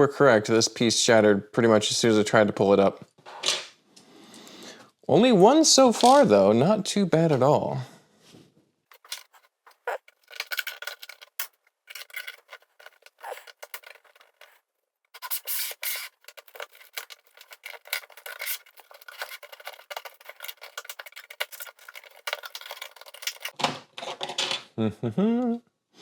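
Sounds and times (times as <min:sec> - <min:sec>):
plastic bricks clicking apart: 0:08.9 - 0:14.6, 0:15.2 - 0:24.6.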